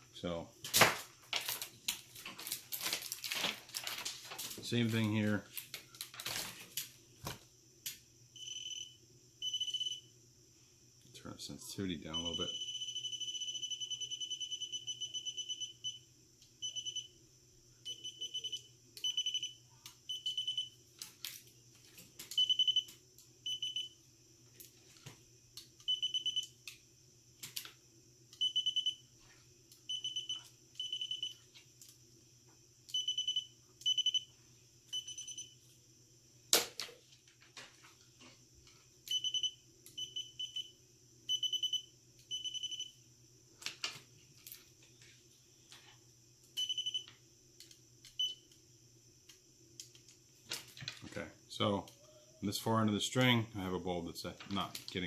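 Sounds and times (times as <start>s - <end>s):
voltage detector pulsing beep: 8.4s - 10.1s, 12.1s - 16.0s, 16.6s - 17.2s, 17.8s - 20.8s, 22.4s - 24.0s, 25.8s - 26.5s, 28.4s - 29.0s, 29.9s - 31.4s, 32.9s - 34.3s, 34.9s - 35.6s, 39.1s - 40.7s, 41.3s - 43.0s, 46.6s - 47.1s, 48.1s - 48.4s.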